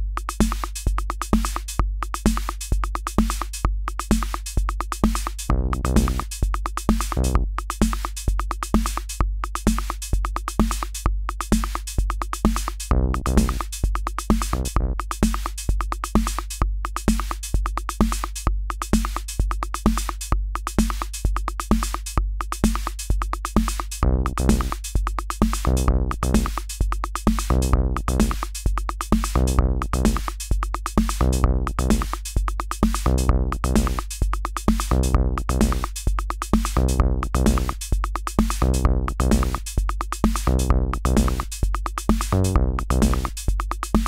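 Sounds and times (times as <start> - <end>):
drum machine beat: 0.0 - 44.0
bass synth phrase: 5.5 - 6.0, 14.6 - 15.0, 24.0 - 24.6, 42.4 - 43.2.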